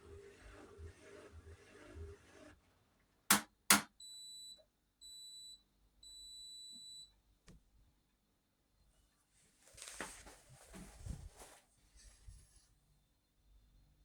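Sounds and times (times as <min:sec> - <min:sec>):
washing machine clicks: 0:03.3 - 0:03.9.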